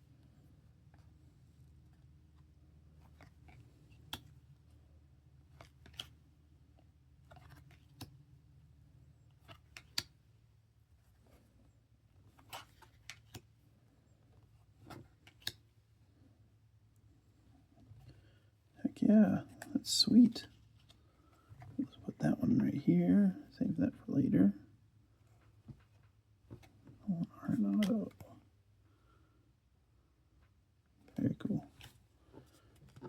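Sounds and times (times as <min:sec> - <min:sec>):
trading cards clicking and rustling: 0:05.5 - 0:06.2, 0:07.2 - 0:08.2, 0:09.3 - 0:10.2, 0:12.2 - 0:13.5, 0:14.8 - 0:15.7, 0:25.4 - 0:28.2.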